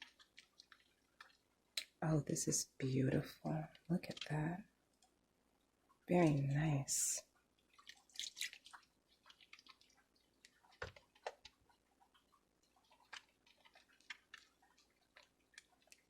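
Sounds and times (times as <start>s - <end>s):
soap lather squishing: 0.0s - 2.0s, 7.6s - 16.0s.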